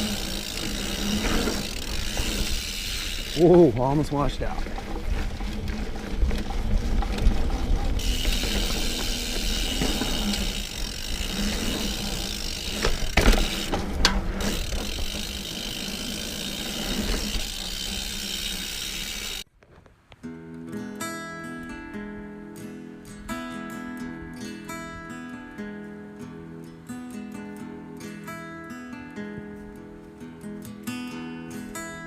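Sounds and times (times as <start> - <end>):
ratchet-like ticking: 0.0 - 4.3
mountain bike on dirt trail: 0.0 - 20.0
acoustic guitar music: 20.2 - 32.0.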